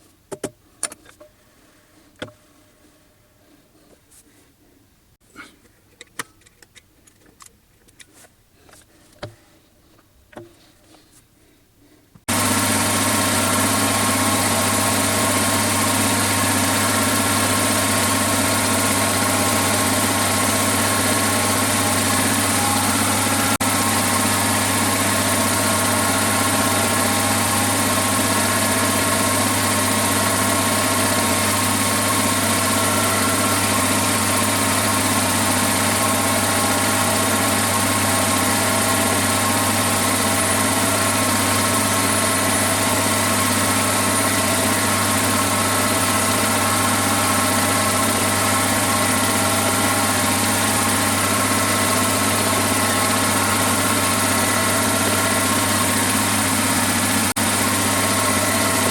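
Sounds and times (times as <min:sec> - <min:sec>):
electric motor whirring: 0:12.3 - 0:58.9.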